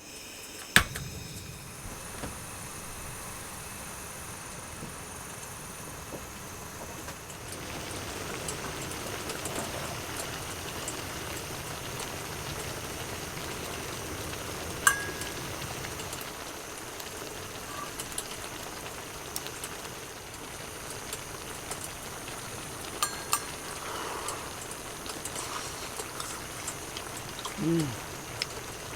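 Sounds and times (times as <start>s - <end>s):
stew bubbling in a pot: 1.0s - 28.9s
sharp clinks: 23.0s - 23.8s.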